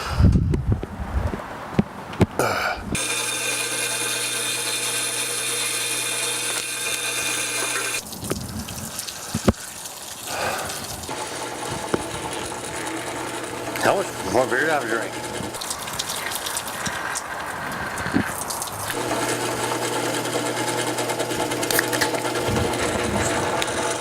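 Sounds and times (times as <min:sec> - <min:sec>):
drill press running: 0:03.0 - 0:08.0, 0:11.1 - 0:15.7, 0:18.9 - 0:24.0.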